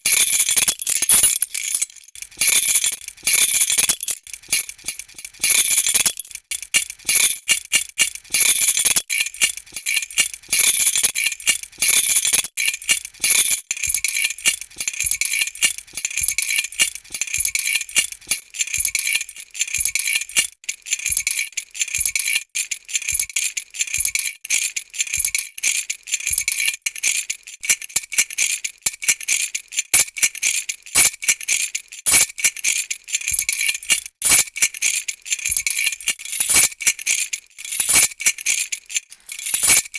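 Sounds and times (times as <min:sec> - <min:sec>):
metal keys jangling: 0:00.0 - 0:20.5, 0:32.1 - 0:39.9.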